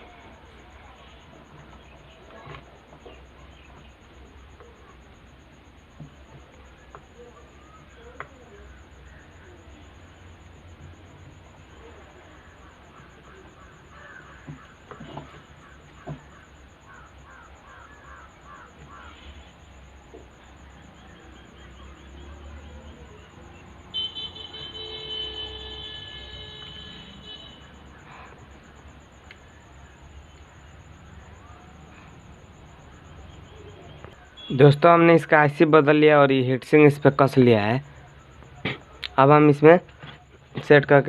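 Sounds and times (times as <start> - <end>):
vehicle horn long note: 23.9 - 27.7.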